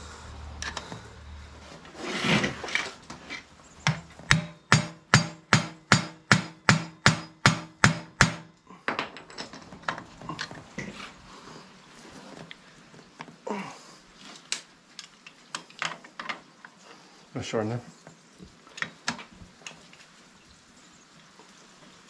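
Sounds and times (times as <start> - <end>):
metal scrape: 1.5 - 3.6.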